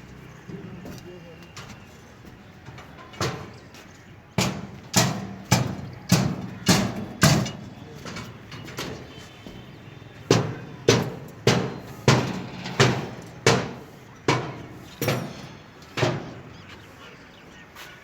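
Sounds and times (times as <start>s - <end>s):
hammer striking steel: 4.4s - 7.7s, 10.3s - 16.3s.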